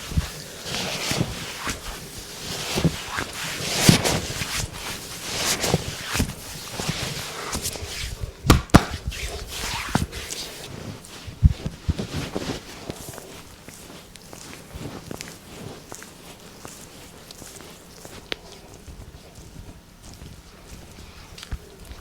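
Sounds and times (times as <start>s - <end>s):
hands rubbing over skin: 0.0s - 20.8s
sharp smacks: 8.5s - 9.2s.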